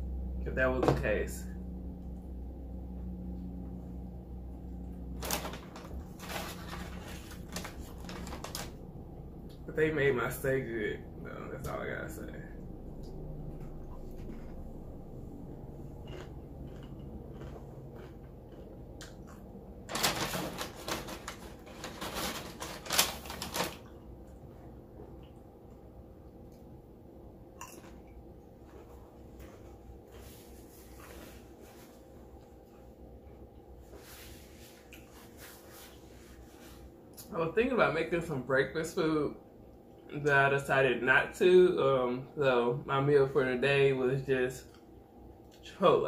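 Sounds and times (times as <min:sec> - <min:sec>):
low steady hum: 0:00.0 - 0:46.0
packaging crinkling: 0:05.2 - 0:08.8, 0:19.9 - 0:23.9
crackles and clicks from eating: 0:12.6 - 0:36.0, 0:44.6 - 0:45.7.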